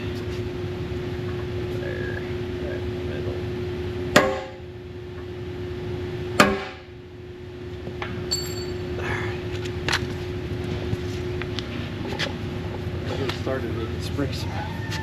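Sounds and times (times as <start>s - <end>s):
steady hum: 0.0s - 15.0s
hammer striking metal punch: 4.1s - 4.6s, 6.4s - 6.9s.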